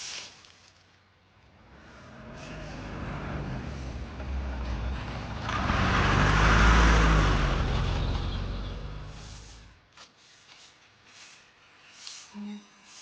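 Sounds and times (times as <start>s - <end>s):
vehicle passing by: 1.5s - 9.8s.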